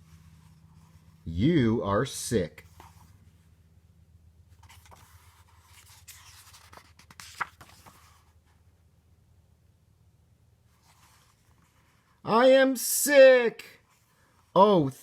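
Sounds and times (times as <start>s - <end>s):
paper page rustling: 4.5s - 8.6s.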